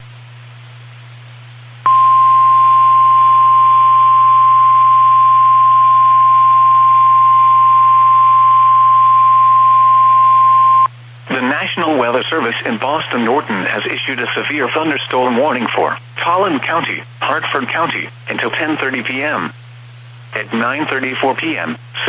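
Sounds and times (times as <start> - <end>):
faint low hum: 0.0 - 22.0
high-pitched alarm tone: 1.8 - 10.9.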